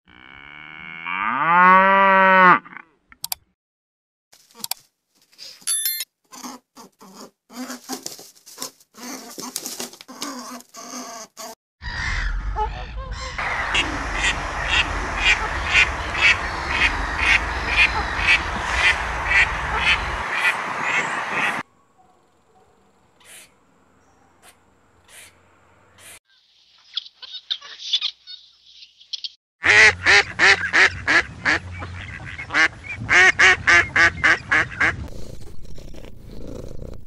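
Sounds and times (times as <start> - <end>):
animal calls: 9.0 - 23.6
steady noisy background: 13.4 - 21.6.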